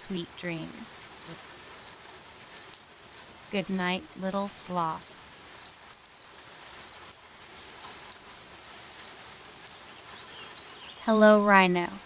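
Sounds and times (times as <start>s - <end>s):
cricket chirping: 0.0s - 9.2s
night ambience hiss: 0.0s - 12.0s.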